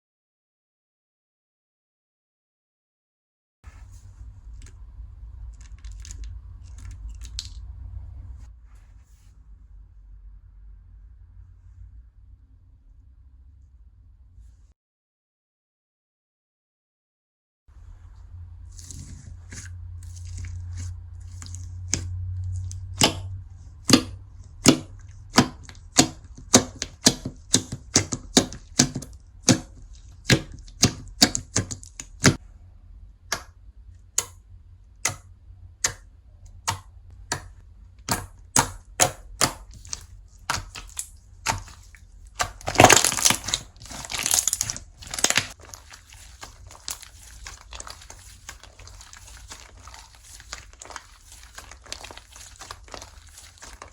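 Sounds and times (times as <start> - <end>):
slime squished by hand popping: 36.6 - 53.9
crackling crunch: 38.1 - 53.9.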